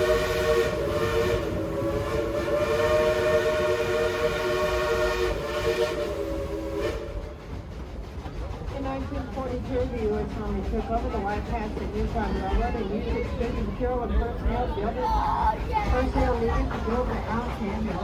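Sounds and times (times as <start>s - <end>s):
steam whistle blast: 0.0s - 7.2s
low rumble of moving train: 0.0s - 18.0s.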